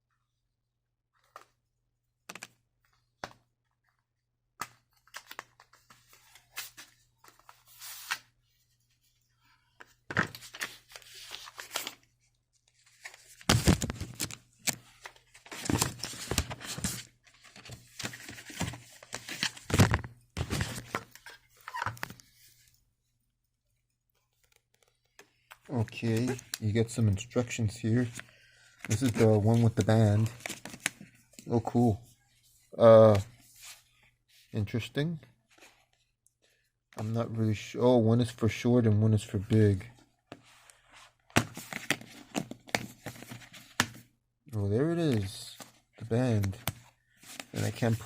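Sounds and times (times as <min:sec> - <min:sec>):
paper and cardboard rustling: 0:10.1 - 0:22.6, 0:27.8 - 0:34.5, 0:39.6 - 0:44.0, 0:45.1 - 0:48.0.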